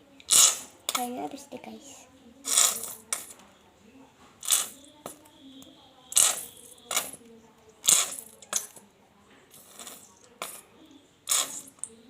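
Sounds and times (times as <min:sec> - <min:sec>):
glue bottle sputtering spurts: 0:00.3 - 0:00.7.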